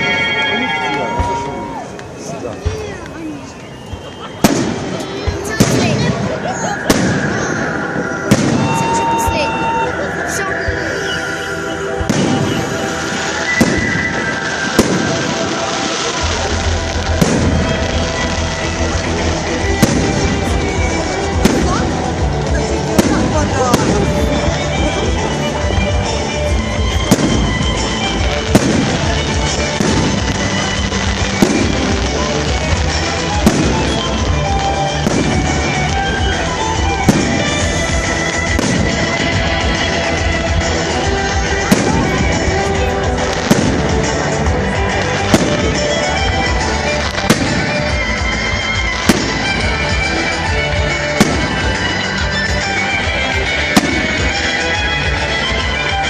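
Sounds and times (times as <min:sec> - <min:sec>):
loud firework bangs: 0:00.0 - 0:09.9, 0:10.6 - 0:56.0
fireworks rumble: 0:00.0 - 0:56.0
music: 0:00.0 - 0:56.0.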